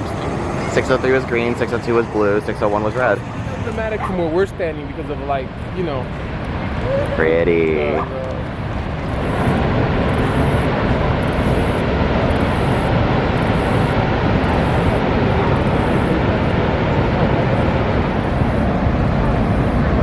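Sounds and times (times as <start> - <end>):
waterfall roaring: 0.0 - 20.0.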